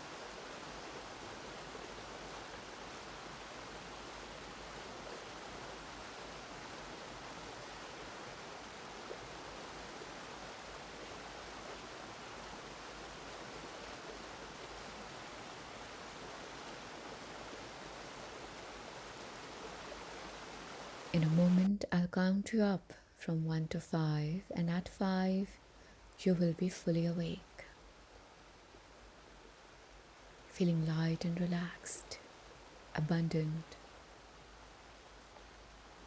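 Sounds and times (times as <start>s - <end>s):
waterfall rushing: 0.0s - 21.2s.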